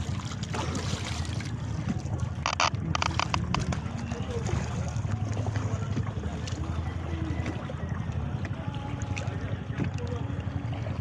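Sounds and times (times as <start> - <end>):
faint clicks and knocks: 2.4 - 3.8.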